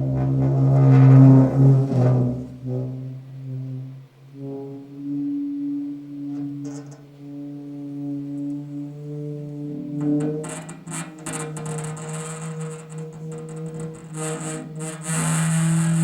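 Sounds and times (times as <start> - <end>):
low droning tones: 0.0 - 10.4.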